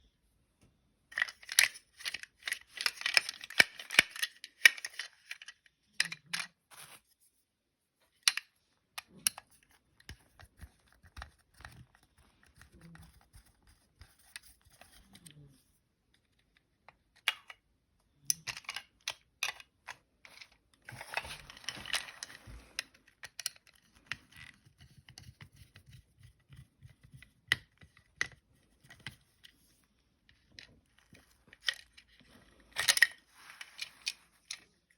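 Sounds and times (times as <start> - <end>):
plastic toys clicking: 1.1 - 6.5, 8.2 - 13.0
rustling and clattering: 20.2 - 27.3.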